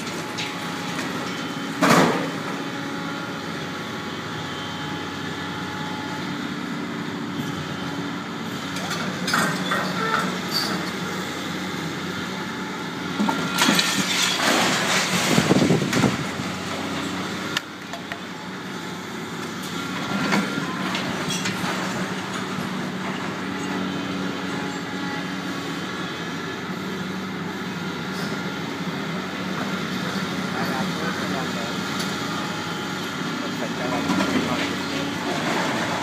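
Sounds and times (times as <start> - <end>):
excavator diesel engine running: 0.0 - 36.0
metal scraping and crunching: 13.3 - 18.0, 33.8 - 36.0.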